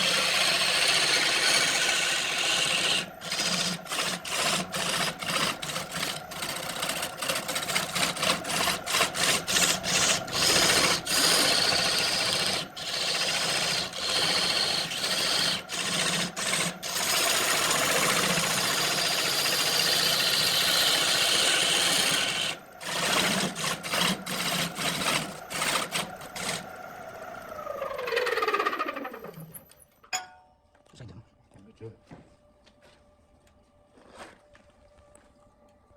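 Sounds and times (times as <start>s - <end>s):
lathe tool scraping wood: 0.0s - 29.7s
lathe motor hum: 0.0s - 29.8s.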